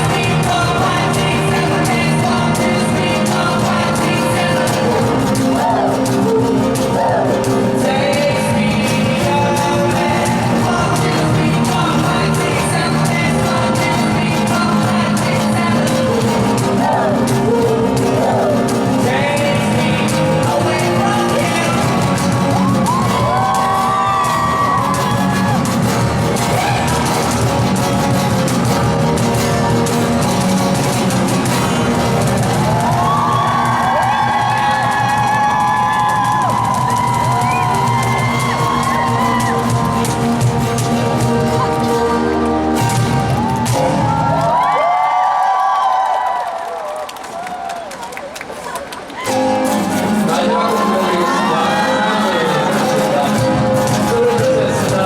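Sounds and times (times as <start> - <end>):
lead vocal singing: 0.0 - 44.0, 49.3 - 55.0
live rock band: 0.0 - 45.8, 49.1 - 55.0.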